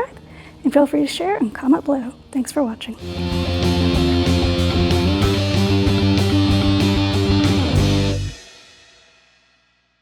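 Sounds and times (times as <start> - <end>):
electric guitar music with beat: 3.0 - 8.4.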